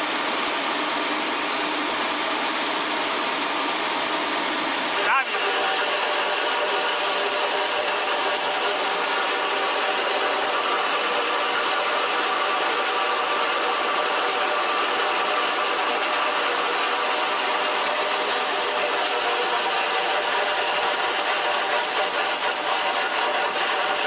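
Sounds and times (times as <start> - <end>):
machine running steadily: 0.0 - 24.0.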